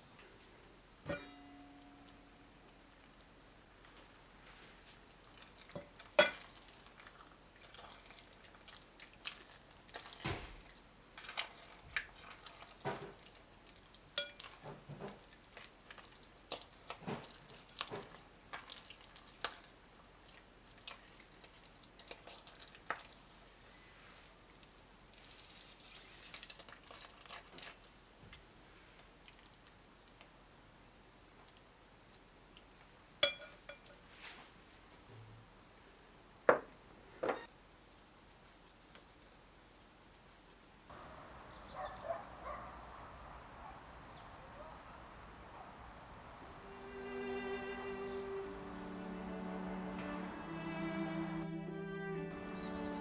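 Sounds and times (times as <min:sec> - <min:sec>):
utensils clinking against pots: 0:01.1 - 0:02.1, 0:14.2 - 0:15.2, 0:33.2 - 0:33.9.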